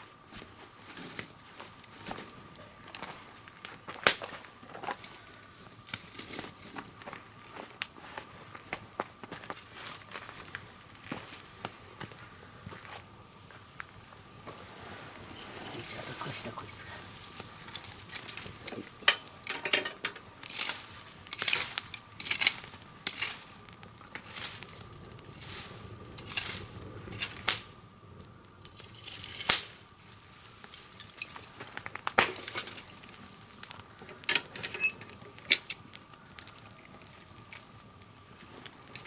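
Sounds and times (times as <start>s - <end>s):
objects clinking and clattering: 17.8s - 20.7s.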